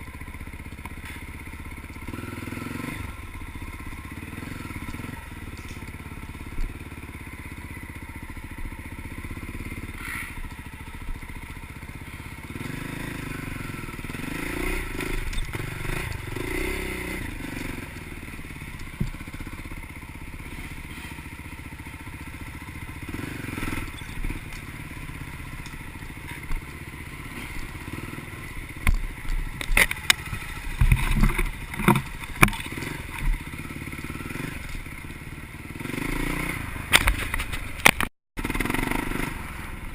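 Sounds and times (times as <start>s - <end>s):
vehicle engine idling low: 0.0s - 35.8s
sharp knocks and rattles: 28.7s - 33.6s.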